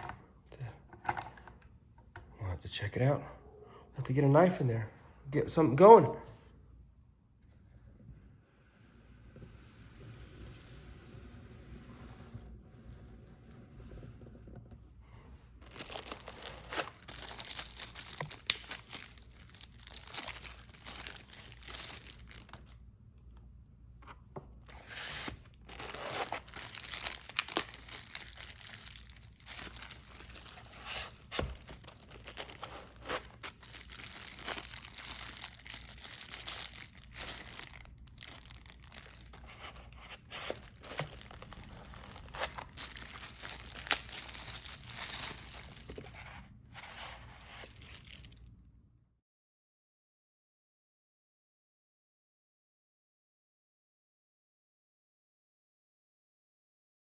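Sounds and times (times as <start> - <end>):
crinkling and rustling handling noise: 13.6 - 48.6.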